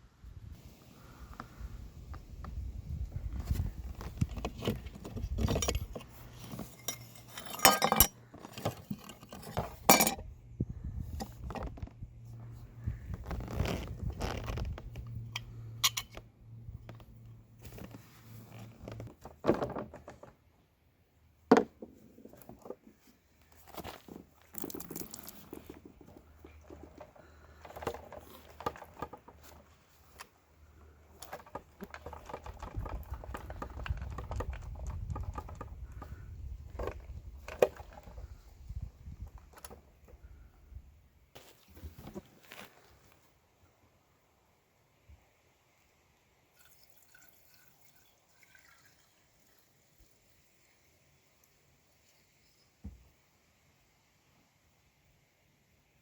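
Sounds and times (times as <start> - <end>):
metal tools clinking: 5.0 - 10.3, 15.4 - 16.2.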